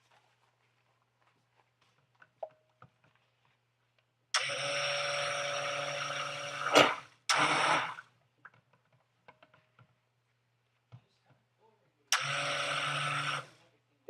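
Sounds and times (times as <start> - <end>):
stick blender running: 4.4 - 8.1, 12.1 - 13.6.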